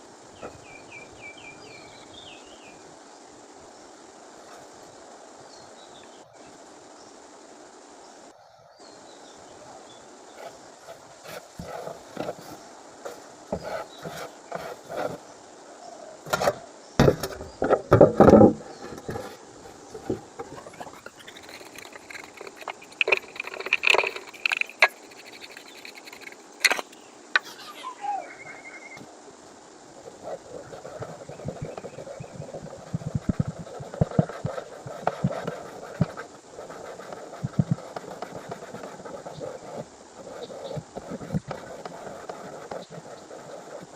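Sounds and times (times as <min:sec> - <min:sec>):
knocks and clatter of parts: 0:16.3 - 0:19.4.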